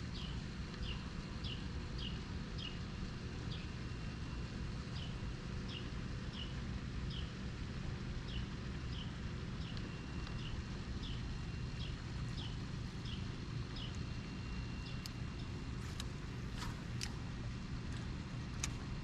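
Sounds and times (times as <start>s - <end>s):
steady low rumble: 7.6s - 19.0s
bird chirping: 8.3s - 16.8s.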